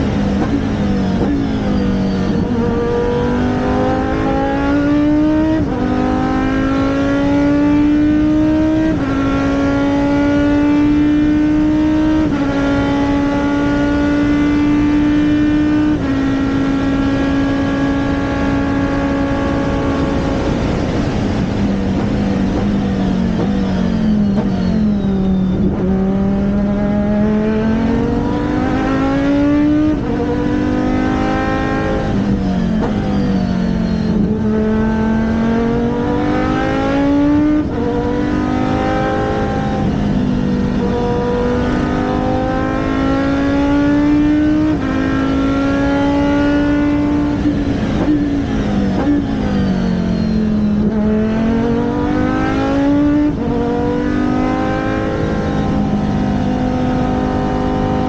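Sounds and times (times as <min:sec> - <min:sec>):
race car engine shifting gears: 0:25.6 - 0:50.0.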